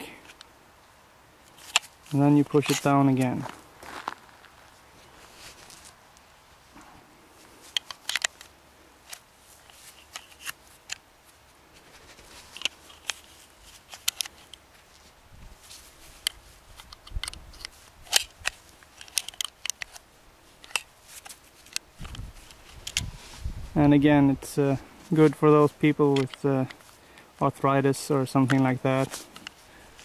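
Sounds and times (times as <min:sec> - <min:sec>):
magazine loader clicks and snaps: 0:07.7 - 0:08.5, 0:16.2 - 0:20.0.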